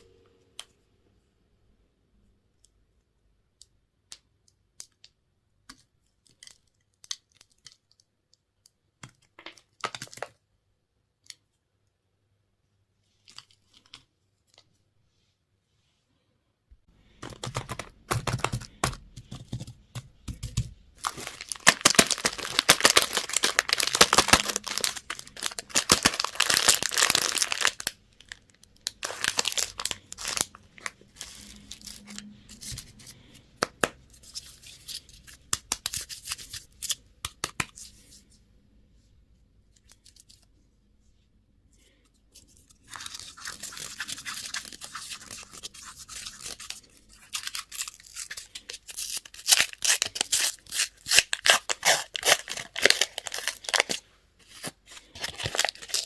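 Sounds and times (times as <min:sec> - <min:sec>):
packaging tearing and crumpling: 0:21.0 - 0:32.8, 0:42.8 - 0:56.0
packaging rustling: 0:21.0 - 0:32.9, 0:42.6 - 0:56.0.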